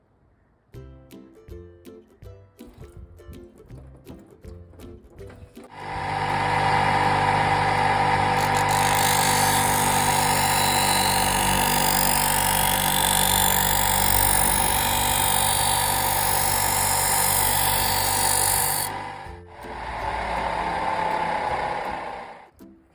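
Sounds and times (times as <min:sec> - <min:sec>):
sharpening machine motor humming: 0:05.7 - 0:22.5
blade grinding hiss: 0:07.1 - 0:22.3.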